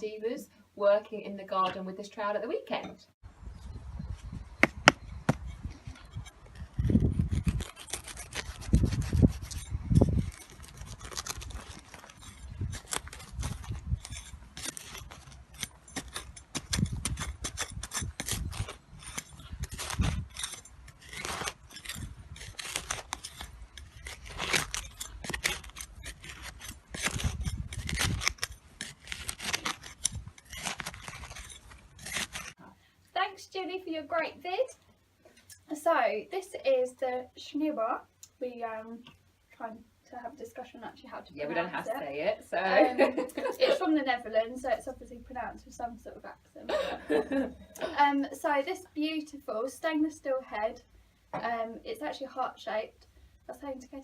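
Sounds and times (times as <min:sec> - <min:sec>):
dull low bumps: 0:03.2 - 0:32.5
trowel scraping dry soil: 0:04.2 - 0:32.6.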